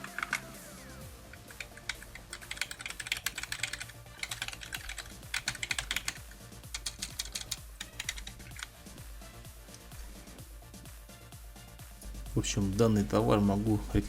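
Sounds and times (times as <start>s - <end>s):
mechanical keyboard typing: 0.0s - 0.6s, 1.3s - 8.7s.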